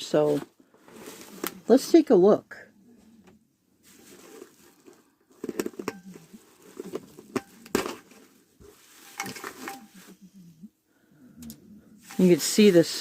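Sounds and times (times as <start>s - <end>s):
bag rustling: 0.1s - 1.8s, 3.8s - 10.5s.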